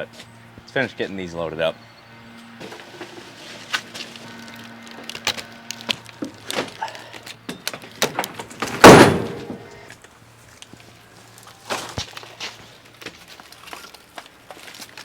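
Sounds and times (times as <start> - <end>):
heavy ringing thunk: 8.8 - 9.7.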